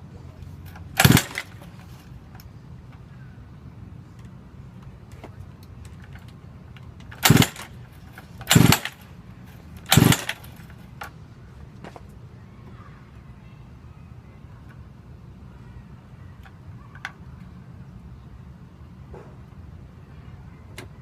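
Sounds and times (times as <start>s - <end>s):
engine turning over: 0.6s - 2.1s, 7.0s - 11.1s
recoil starter pulls: 0.6s - 2.5s, 5.8s - 11.1s.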